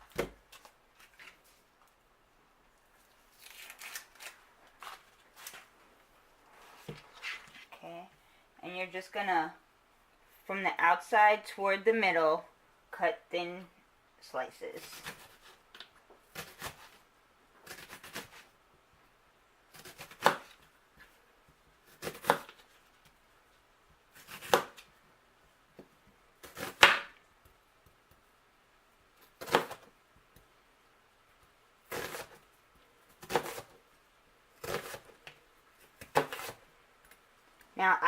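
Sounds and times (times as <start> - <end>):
knife slicing onion: 14.8 - 15.6, 16.3 - 17.0, 17.6 - 18.5, 19.7 - 21.1, 21.9 - 22.7, 24.1 - 24.9, 26.4 - 27.2, 29.2 - 29.9, 31.8 - 32.4, 33.1 - 33.8, 34.6 - 35.3, 35.9 - 36.6.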